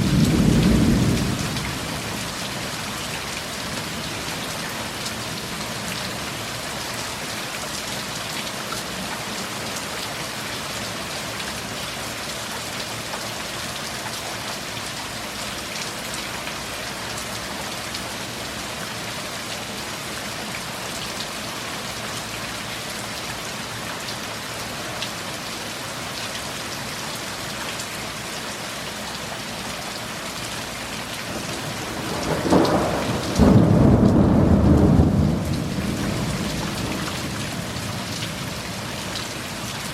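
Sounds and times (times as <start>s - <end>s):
heavy rain: 0.0s - 39.9s
loud thunder peal: 32.0s - 36.5s.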